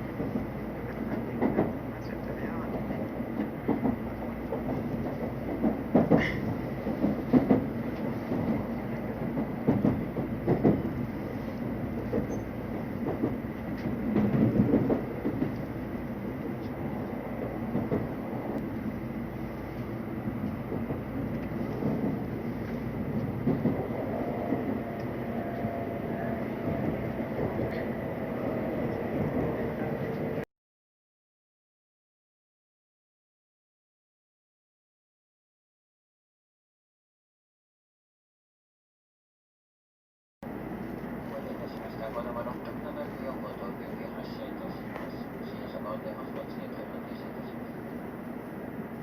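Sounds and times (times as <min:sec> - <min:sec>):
train running rumble: 0:00.0 - 0:30.4, 0:40.5 - 0:49.0.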